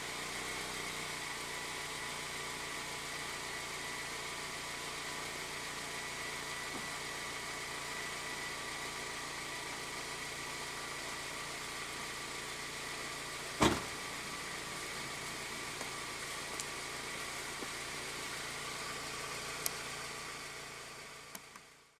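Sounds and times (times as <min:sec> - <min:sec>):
car engine idling: 0:00.0 - 0:22.0
sharp knock: 0:13.6 - 0:14.0.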